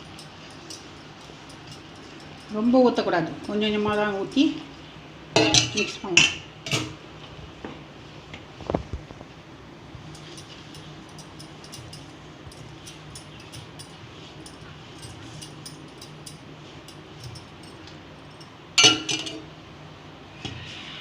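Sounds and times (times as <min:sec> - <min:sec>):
metallic clank: 0:18.8 - 0:19.5.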